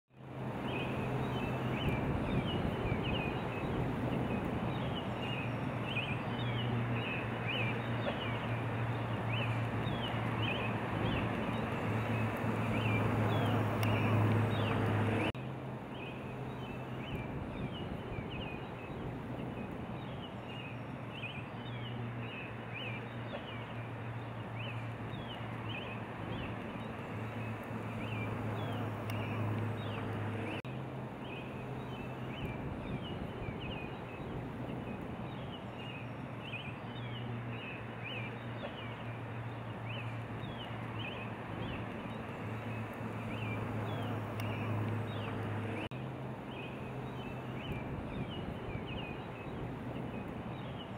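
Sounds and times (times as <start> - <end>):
birds chirping: 0.3 - 50.9.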